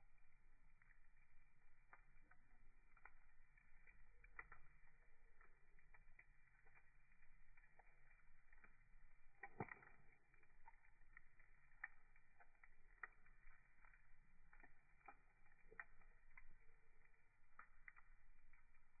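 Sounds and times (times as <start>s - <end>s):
wood fire crackling: 0.0s - 19.0s
loud crack of fire: 0.8s - 19.0s.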